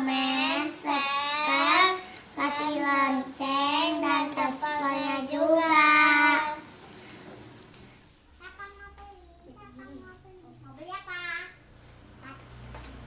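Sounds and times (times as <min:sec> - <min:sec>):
child singing: 0:00.0 - 0:06.7.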